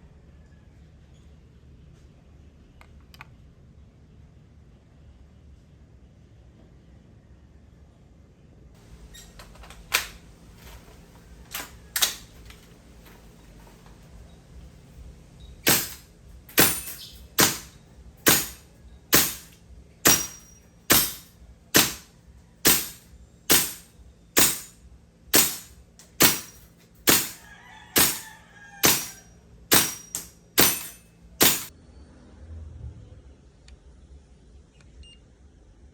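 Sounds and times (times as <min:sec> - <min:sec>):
airsoft rifle shots: 0:15.6 - 0:31.7.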